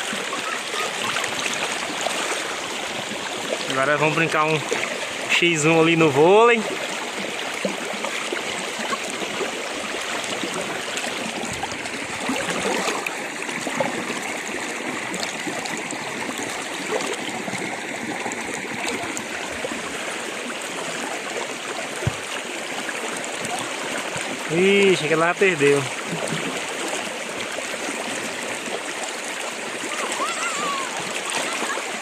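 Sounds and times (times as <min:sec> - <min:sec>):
river water rushing: 0:00.0 - 0:32.0.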